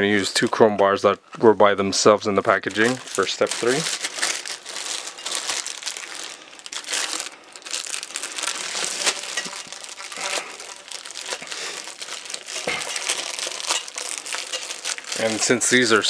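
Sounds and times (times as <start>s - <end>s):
plastic packaging crinkling: 0.0s - 0.7s, 2.4s - 16.0s.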